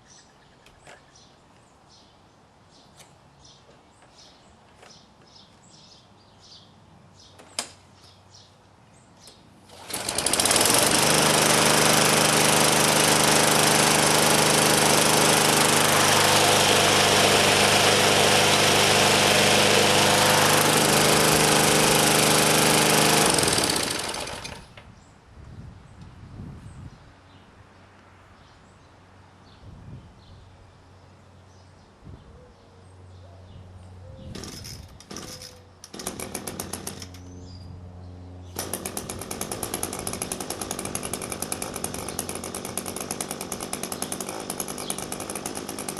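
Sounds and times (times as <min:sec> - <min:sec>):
lawn mower engine running: 0:09.7 - 0:24.8, 0:34.3 - 0:37.4, 0:38.5 - 0:45.9.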